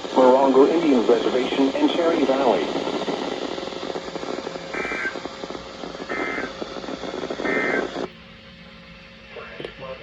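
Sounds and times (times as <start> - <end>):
crackling radio static: 0.0 - 8.1
warbling two-tone data bursts: 4.1 - 8.1.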